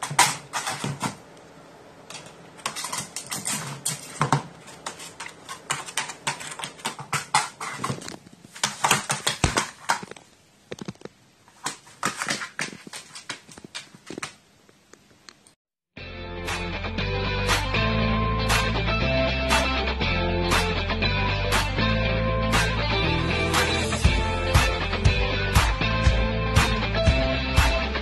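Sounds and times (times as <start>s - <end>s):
crow pecking at a small drum: 2.1s - 10.2s.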